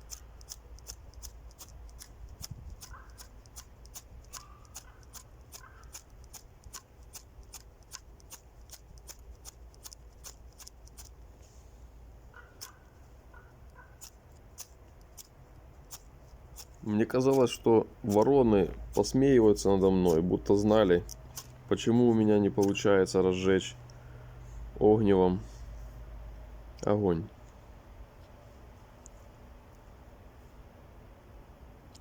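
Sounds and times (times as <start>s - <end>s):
striker scraping ferro rod: 0.0s - 11.2s, 12.4s - 22.9s
crows cawing: 5.6s - 5.9s, 12.3s - 14.0s.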